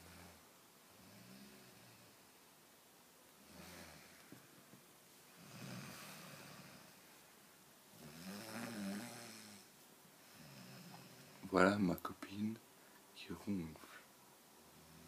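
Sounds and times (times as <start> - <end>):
woman snoring: 3.4 - 4.2, 5.4 - 7.0, 8.0 - 11.4.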